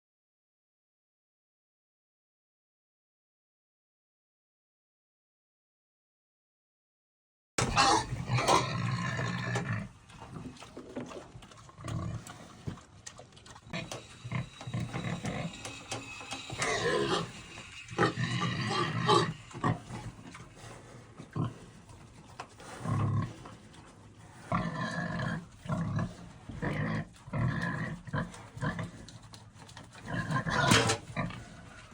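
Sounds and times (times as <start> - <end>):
pigs squealing and grunting: 7.6 - 31.9.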